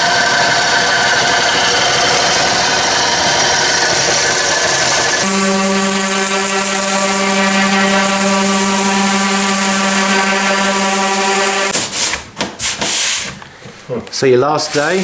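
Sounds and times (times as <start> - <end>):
power tool motor running: 0.0 - 11.8, 14.7 - 15.0
rubbing strokes on wood: 5.2 - 13.4, 14.7 - 15.0.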